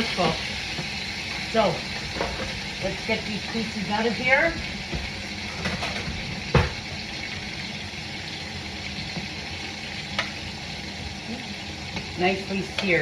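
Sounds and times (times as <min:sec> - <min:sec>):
chicken sizzling in hot oil: 0:00.0 - 0:13.0
knock against a pot: 0:05.7 - 0:06.8.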